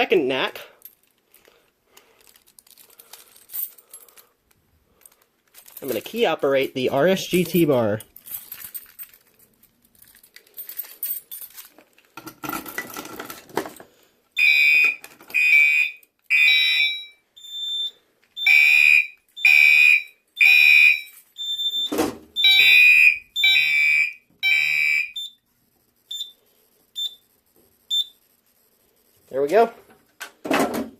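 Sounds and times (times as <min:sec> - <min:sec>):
faint clicks and rustling: 0:00.8 - 0:06.2
fire alarm horns: 0:14.4 - 0:25.4.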